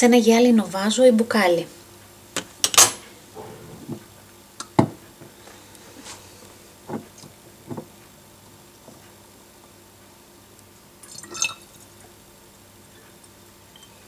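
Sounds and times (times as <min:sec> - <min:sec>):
kitchenware knocks and clicks: 0:04.8 - 0:05.0.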